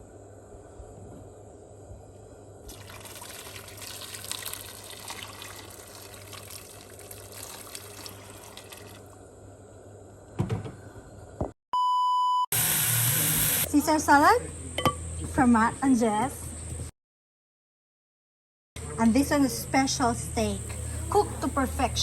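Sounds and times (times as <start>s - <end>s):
water running from a tap: 2.7s - 9.1s
loud steady beep: 11.8s - 12.9s.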